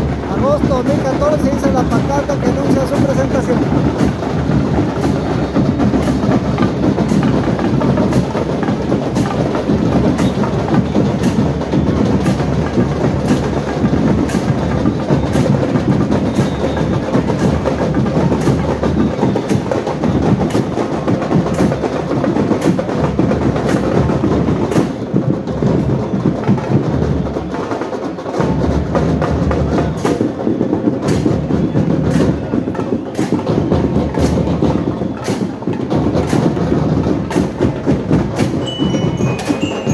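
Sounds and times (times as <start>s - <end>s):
sharp high percussion strikes: 0.0s - 26.7s, 37.3s - 39.9s
parade band drumming: 0.0s - 39.9s.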